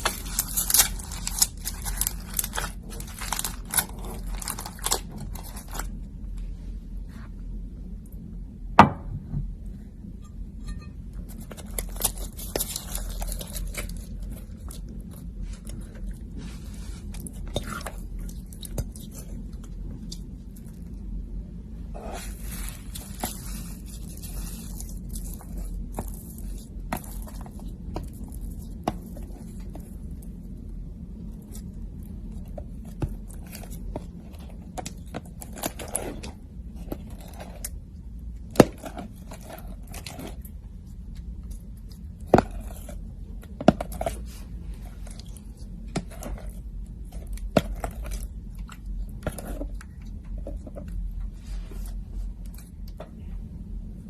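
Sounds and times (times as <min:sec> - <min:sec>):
low steady hum: 0:00.0 - 0:54.0.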